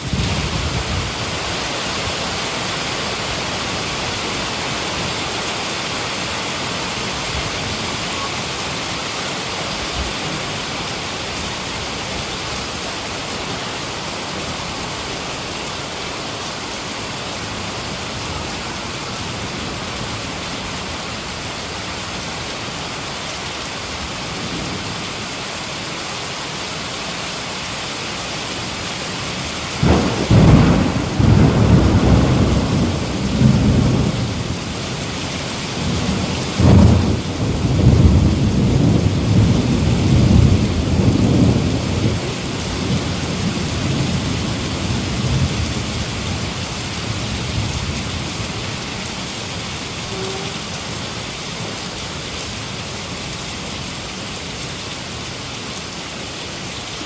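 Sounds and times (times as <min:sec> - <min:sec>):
heavy rain: 0:00.0 - 0:57.0
thunder rumbling: 0:29.8 - 0:34.9, 0:35.7 - 0:48.8.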